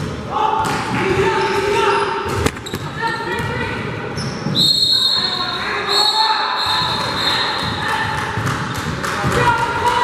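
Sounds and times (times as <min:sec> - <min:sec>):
basketball bouncing on floor: 0:07.6 - 0:10.0.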